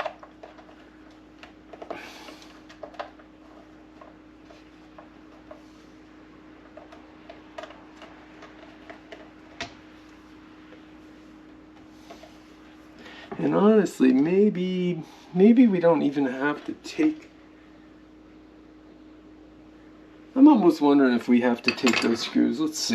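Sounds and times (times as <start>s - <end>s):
faint steady hum: 0.0s - 22.9s.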